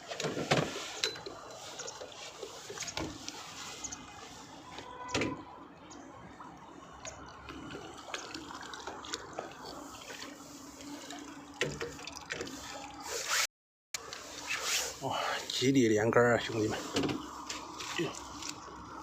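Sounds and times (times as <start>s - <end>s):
fish splashing in water: 0.4s - 13.4s
water dripping: 0.9s - 13.1s, 17.2s - 19.0s.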